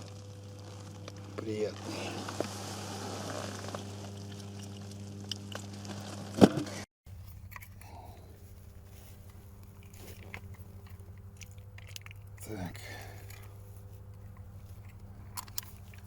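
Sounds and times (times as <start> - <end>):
low electrical hum: 0.0 - 16.0
handling clicks and crunches: 3.4 - 16.0.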